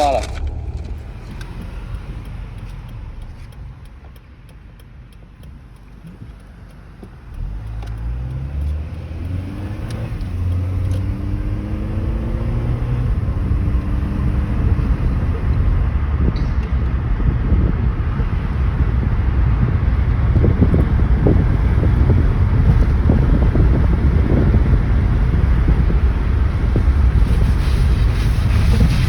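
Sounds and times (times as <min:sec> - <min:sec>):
car engine: 0:00.0 - 0:29.0
tyre road noise: 0:00.0 - 0:29.0.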